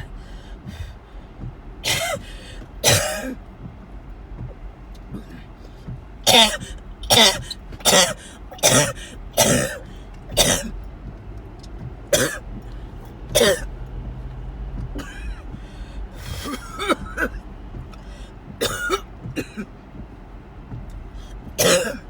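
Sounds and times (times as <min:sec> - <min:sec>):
car cabin rumble: 0:00.0 - 0:22.0
person coughing: 0:01.9 - 0:02.2, 0:02.8 - 0:03.4, 0:06.3 - 0:09.8, 0:10.4 - 0:10.7, 0:12.2 - 0:12.4, 0:13.4 - 0:13.7, 0:15.0 - 0:15.4, 0:16.3 - 0:17.4, 0:18.6 - 0:19.7, 0:21.6 - 0:22.0
throat-clearing: 0:21.6 - 0:22.0.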